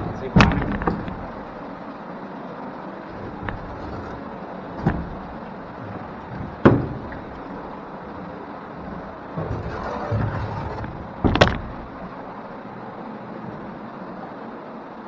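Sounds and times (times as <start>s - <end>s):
hollow knocks on kayak hull: 0.0s - 1.8s, 3.0s - 12.3s
steady background hiss: 0.0s - 15.0s.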